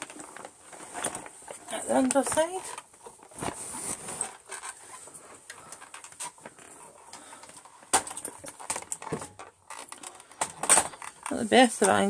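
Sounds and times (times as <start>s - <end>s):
faint rustles and clicks: 0.0s - 12.0s.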